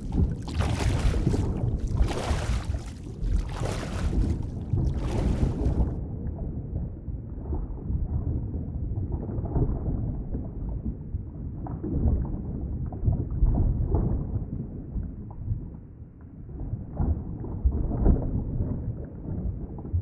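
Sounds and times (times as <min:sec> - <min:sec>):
muffled underwater rumbling: 0:00.0 - 0:06.0.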